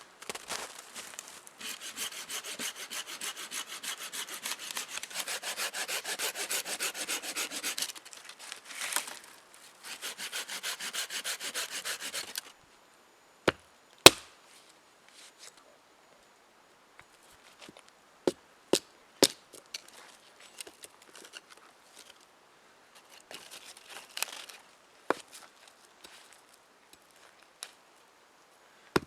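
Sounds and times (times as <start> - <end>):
rhythmic sawing strokes: 1.6 - 7.9, 9.8 - 12.4.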